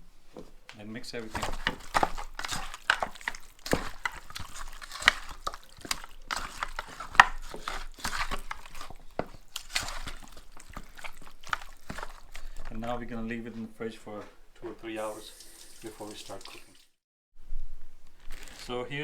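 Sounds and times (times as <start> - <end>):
wet squelching of chicken in marinade: 1.1 - 13.0.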